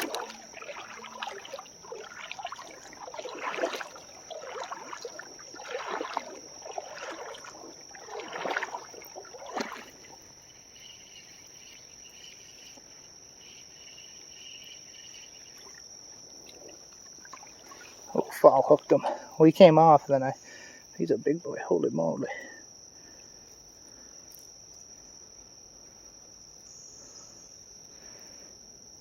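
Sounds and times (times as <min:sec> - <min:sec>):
creek water splashing: 0:00.0 - 0:19.6
warbling insect or bird note: 0:00.0 - 0:20.4
insects droning: 0:00.0 - 0:29.0.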